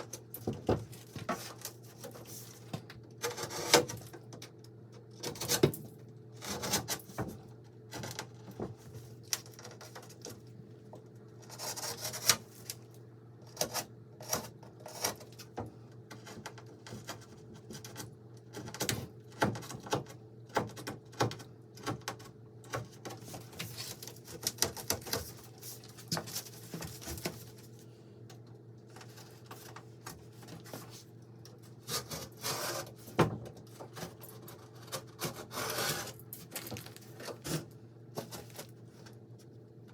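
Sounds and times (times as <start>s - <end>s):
scraping and rubbing on wood: 0.0s - 4.2s, 13.5s - 27.8s, 28.9s - 39.2s.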